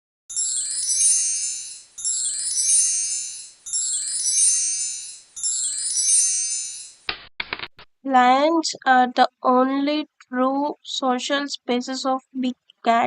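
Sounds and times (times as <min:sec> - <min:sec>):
shimmering bell-like chime: 0:00.3 - 0:07.1.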